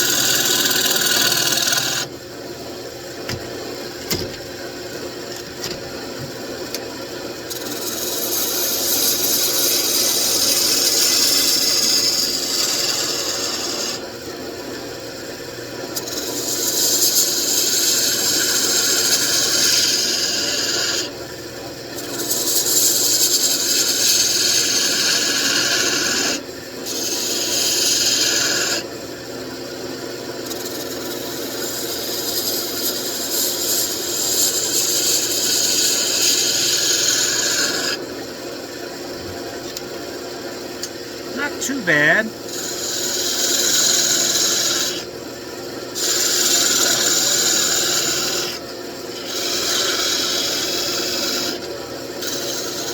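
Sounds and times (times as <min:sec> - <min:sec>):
lathe motor hum: 0:00.0 - 0:02.1, 0:07.5 - 0:14.0
turning tool shaving wood: 0:00.0 - 0:02.1, 0:07.5 - 0:14.1, 0:15.9 - 0:21.1, 0:21.9 - 0:28.9, 0:30.4 - 0:38.0, 0:41.4 - 0:45.1, 0:45.9 - 0:51.6, 0:52.2 - 0:52.9.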